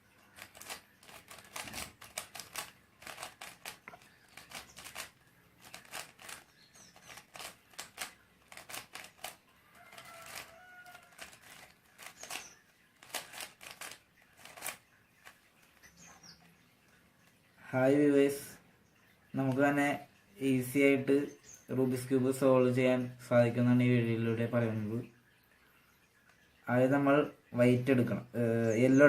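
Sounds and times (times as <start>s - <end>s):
puzzle cube plastic clicks: 0.2s - 9.4s, 10.2s - 16.2s.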